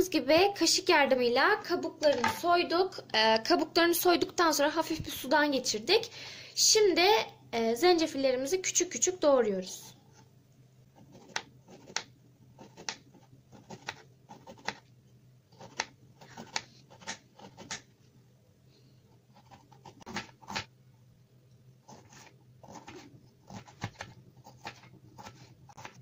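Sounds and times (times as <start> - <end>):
knife chopping on cutting board: 15.6 - 17.8, 22.0 - 26.0.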